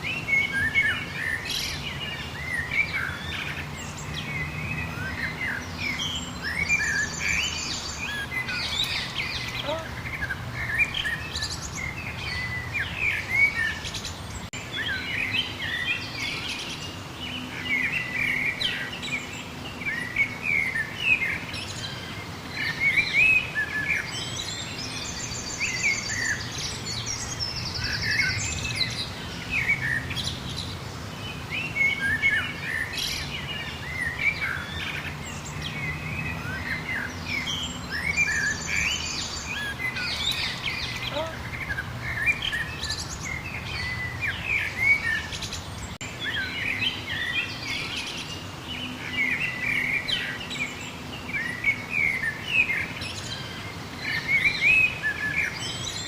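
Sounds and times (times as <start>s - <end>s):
songbirds chirping and singing: 0.0s - 56.0s.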